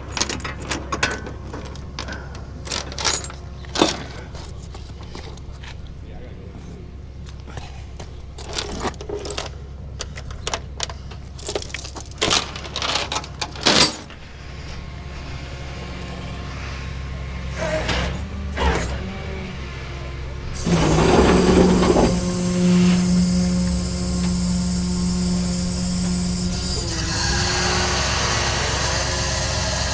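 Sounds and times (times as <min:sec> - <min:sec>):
keys jangling: 0:11.3 - 0:14.1
truck engine idling and revving: 0:14.3 - 0:29.9.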